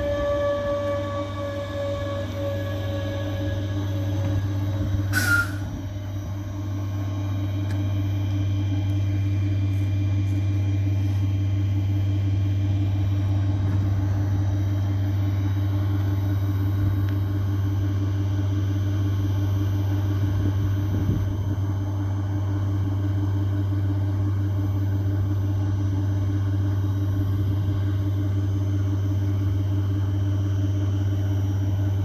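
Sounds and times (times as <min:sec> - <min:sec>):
train wheels squealing: 0:00.0 - 0:05.8
train rumbling: 0:00.0 - 0:29.8.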